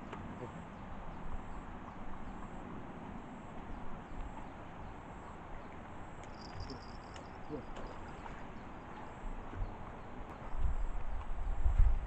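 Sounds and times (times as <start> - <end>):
faint high chirps: 6.2 - 8.2.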